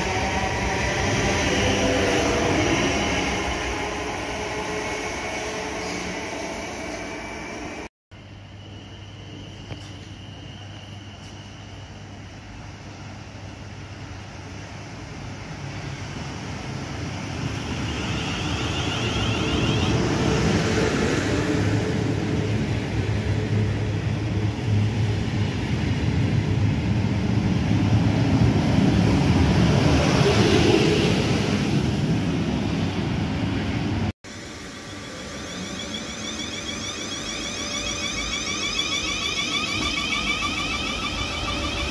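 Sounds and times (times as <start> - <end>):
train wheels rumbling on rail: 9.6 - 41.9.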